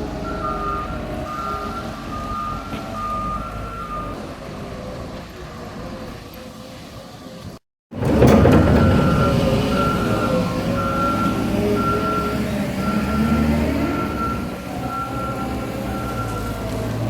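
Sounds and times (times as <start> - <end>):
diesel engine revving: 0.0 - 6.4, 7.9 - 17.0
reversing alarm beeping: 0.2 - 4.2, 8.1 - 16.7.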